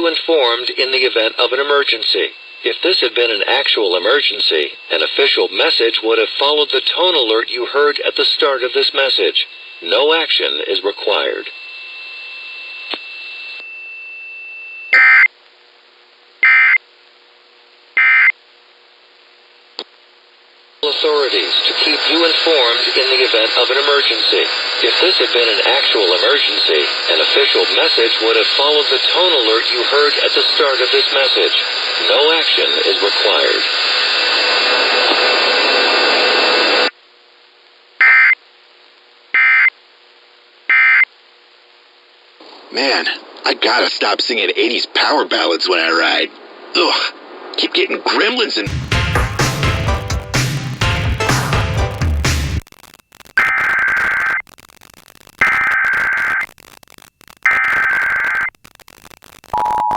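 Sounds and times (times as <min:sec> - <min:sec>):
buzzy data bursts: 0:00.4 - 0:13.5, 0:48.6 - 0:59.9
warbling digital data tones: 0:52.9 - 0:59.9.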